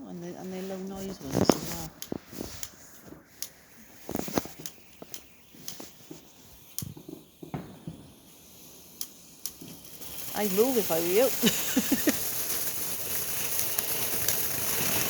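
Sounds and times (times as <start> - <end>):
fireworks popping and crackling: 0.0 - 15.0
soft hiss: 0.0 - 15.0.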